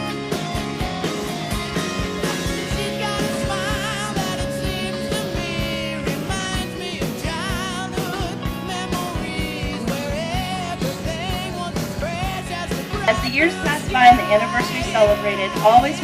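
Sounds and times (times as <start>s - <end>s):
rock song with singing: 0.0s - 16.0s.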